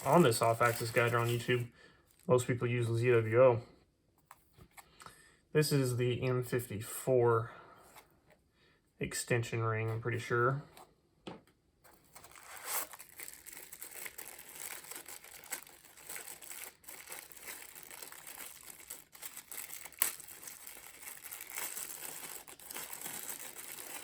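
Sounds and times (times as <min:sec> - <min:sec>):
packaging crinkling and rustling: 0:00.0 - 0:02.3, 0:11.9 - 0:24.0.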